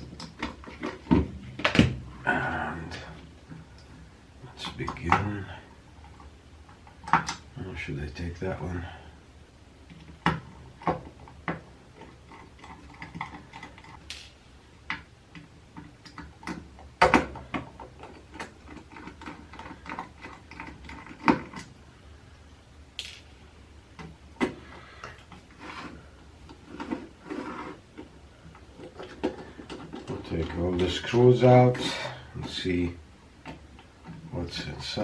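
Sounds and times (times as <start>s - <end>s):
hand tools clicking and knocking: 28.0s - 31.1s.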